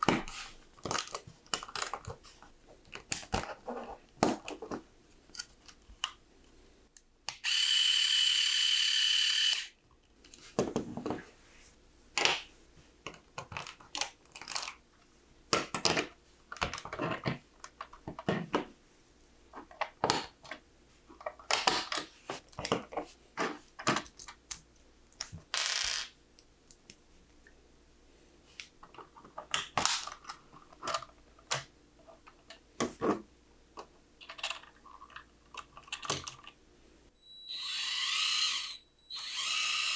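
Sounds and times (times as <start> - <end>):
plastic bricks clicking and clattering: 34.2 - 36.6.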